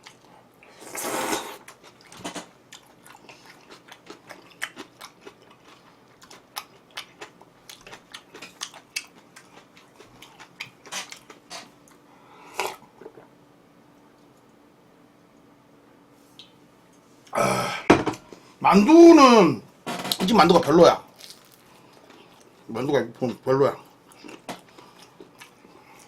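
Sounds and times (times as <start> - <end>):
close chewing: 1.7 - 12.0, 21.2 - 22.6
wet smacks and crunches: 21.1 - 21.7.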